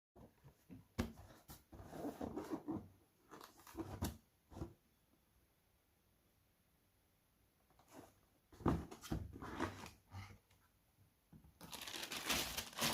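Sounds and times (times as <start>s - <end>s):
packaging rustling: 11.6s - 12.9s.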